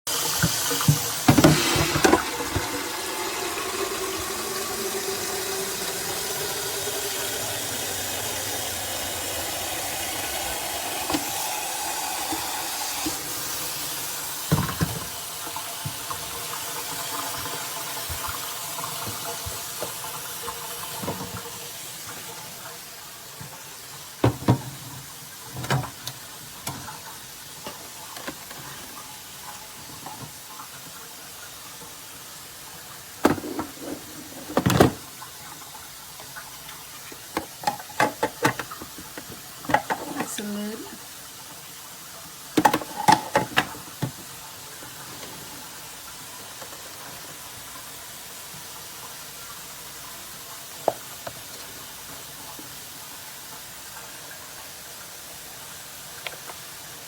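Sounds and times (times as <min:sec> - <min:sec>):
water pouring into a mug: 0:00.2 - 0:24.3.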